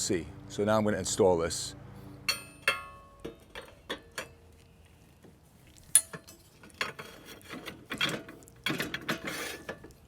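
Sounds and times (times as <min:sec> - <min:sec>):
steel parts clinking: 0:02.3 - 0:04.4, 0:05.9 - 0:08.3.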